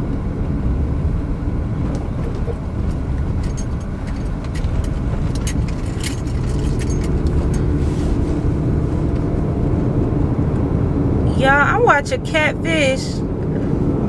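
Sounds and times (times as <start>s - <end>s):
road and tyre rumble: 0.0s - 14.0s
loose items clicking and rattling: 1.9s - 7.8s.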